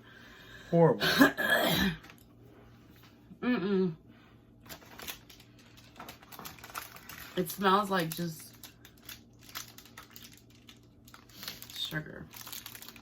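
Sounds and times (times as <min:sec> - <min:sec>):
person humming: 0:03.4 - 0:04.0
faint clicks and rustles: 0:04.6 - 0:13.0.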